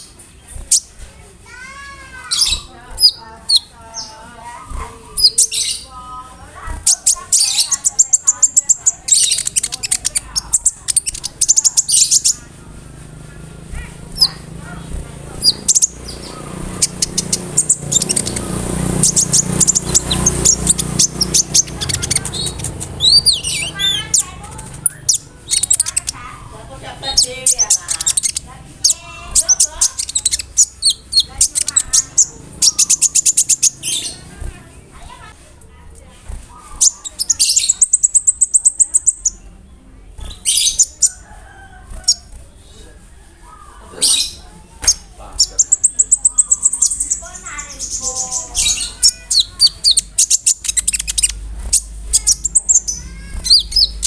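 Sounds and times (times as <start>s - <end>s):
bird singing sharp chips: 0.0s - 35.4s, 36.1s - 42.5s, 43.5s - 54.0s.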